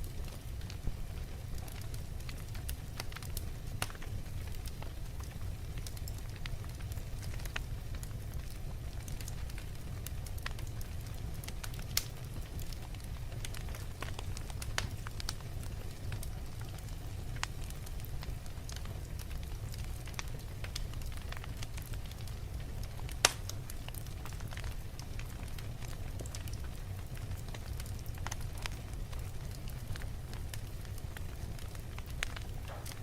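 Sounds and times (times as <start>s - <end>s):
fire crackling and popping: 0.0s - 33.0s
low rumble of flames: 0.0s - 33.0s.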